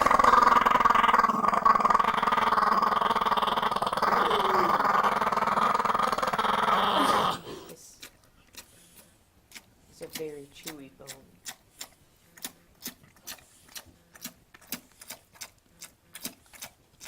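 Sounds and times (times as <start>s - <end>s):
dog growling: 0.0s - 7.8s.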